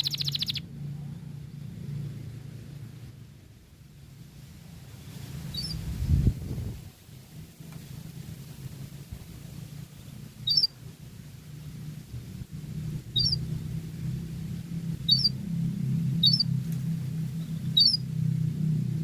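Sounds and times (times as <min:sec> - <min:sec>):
canary chirping: 0:00.0 - 0:00.7, 0:05.5 - 0:05.8, 0:10.4 - 0:10.8, 0:13.1 - 0:13.4, 0:15.1 - 0:15.4, 0:16.2 - 0:16.5, 0:17.4 - 0:18.0
steady low hum: 0:00.0 - 0:19.0.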